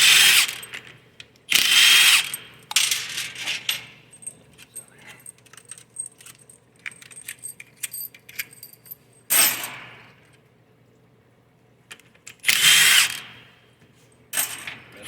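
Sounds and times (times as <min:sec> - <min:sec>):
small metal parts clinking: 0:01.6 - 0:09.7.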